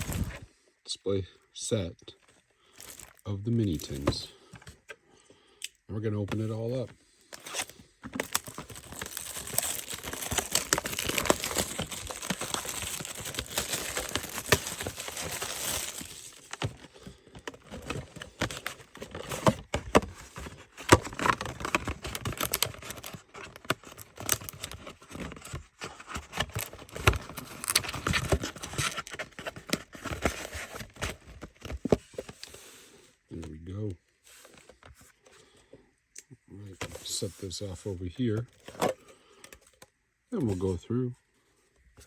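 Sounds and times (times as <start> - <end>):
plastic wrapping crinkling and tearing: 0.0 - 0.4, 7.3 - 16.9, 17.5 - 31.7.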